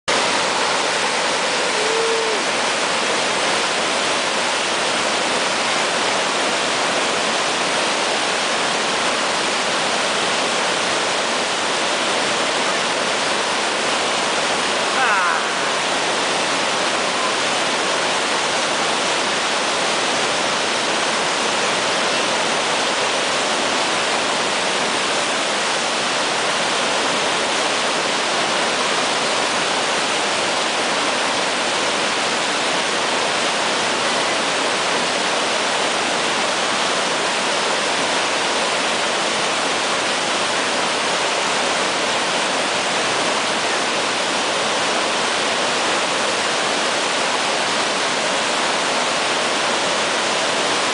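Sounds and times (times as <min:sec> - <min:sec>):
whitewater rapids rushing: 0:00.1 - 0:50.9.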